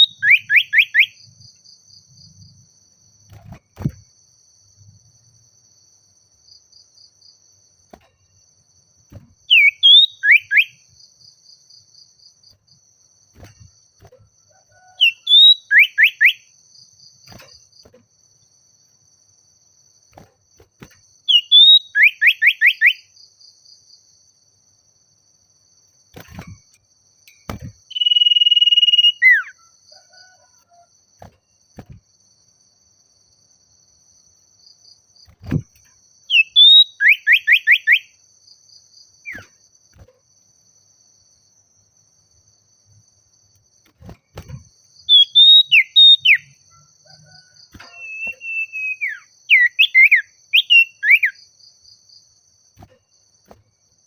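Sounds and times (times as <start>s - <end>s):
bird singing falling whistles: 0.0s - 1.2s, 9.4s - 10.8s, 14.8s - 16.5s, 21.3s - 23.1s, 27.4s - 29.6s, 36.3s - 38.1s, 39.2s - 39.6s, 44.4s - 46.6s, 47.3s - 51.4s.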